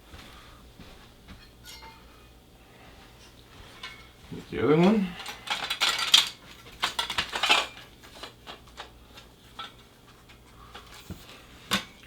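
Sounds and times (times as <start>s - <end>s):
metal bars clinking and rattling: 1.5s - 2.1s, 3.8s - 4.2s, 4.8s - 8.9s.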